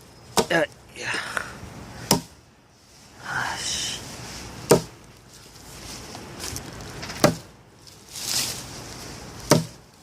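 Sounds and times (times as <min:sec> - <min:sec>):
hatchet chopping into log: 0:02.1 - 0:02.3, 0:04.7 - 0:04.9, 0:07.2 - 0:07.5, 0:09.5 - 0:09.8.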